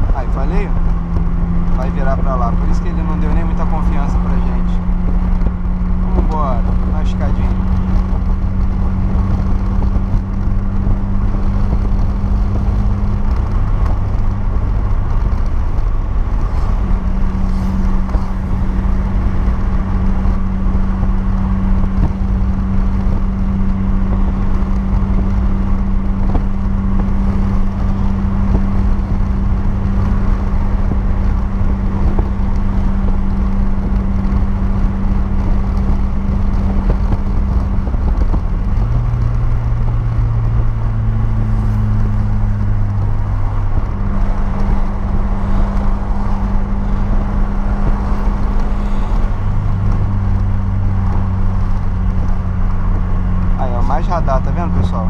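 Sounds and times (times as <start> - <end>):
car engine from inside cabin: 0.0 - 55.0.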